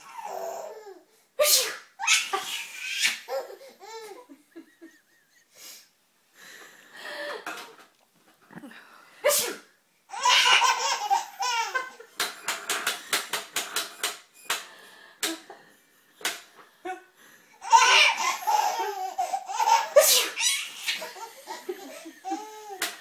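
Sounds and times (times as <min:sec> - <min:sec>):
baby laughing: 0:00.0 - 0:01.0, 0:02.0 - 0:05.2, 0:10.1 - 0:13.0, 0:17.6 - 0:23.0
sneeze: 0:01.4 - 0:03.2, 0:09.2 - 0:09.7, 0:20.0 - 0:20.5.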